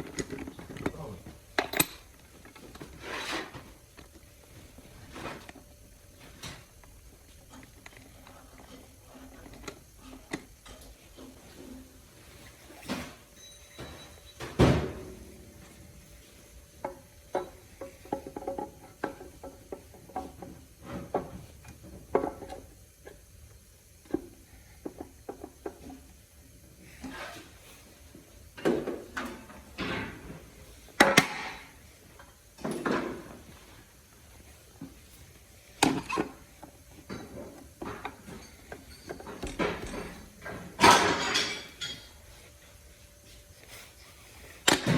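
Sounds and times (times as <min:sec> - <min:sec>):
metal parts and tools clanking: 0:01.6 - 0:03.6, 0:37.1 - 0:42.2.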